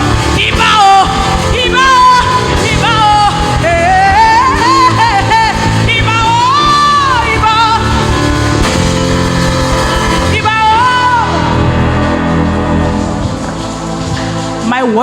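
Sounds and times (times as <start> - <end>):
sustained instrumental chords: 0.0 - 15.0
woman singing wordless runs: 0.1 - 12.0.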